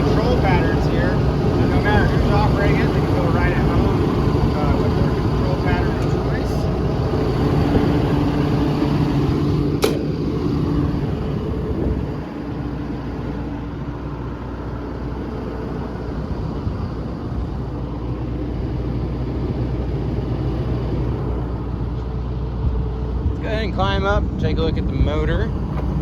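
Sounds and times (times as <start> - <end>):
diesel engine idling: 0.0 - 26.0
sharp click: 9.8 - 10.1.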